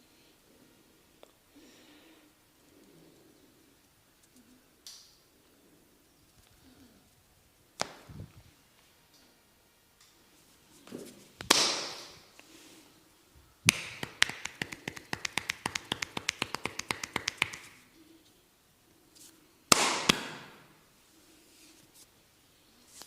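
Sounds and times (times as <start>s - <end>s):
hand slaps on head: 7.8s - 8.1s, 11.4s - 12.2s, 13.7s - 17.8s, 19.7s - 20.6s
fast tapping on head: 13.7s - 17.8s.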